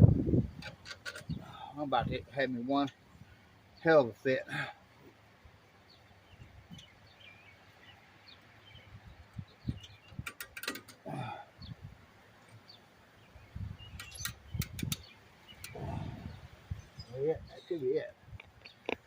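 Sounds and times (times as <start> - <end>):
metallic clicks and knocks: 0.5 - 1.4, 9.8 - 11.0, 14.0 - 15.8
faint bird chirps: 12.5 - 18.1.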